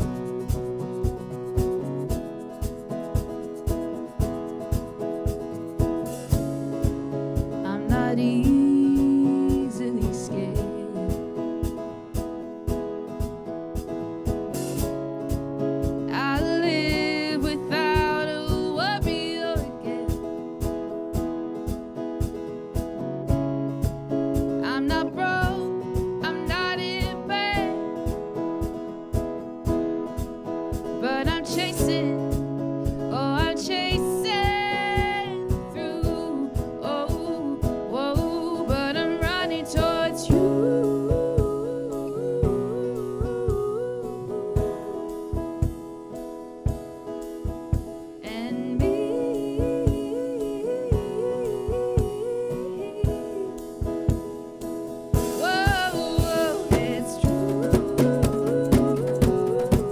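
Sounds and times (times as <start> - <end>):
acoustic guitar strumming: 0.0 - 59.9
person singing: 6.3 - 11.7, 16.1 - 20.3, 24.6 - 28.0, 31.0 - 32.4, 33.1 - 45.4, 48.2 - 54.3, 55.2 - 59.9
melodic music with steady beat: 53.6 - 59.9.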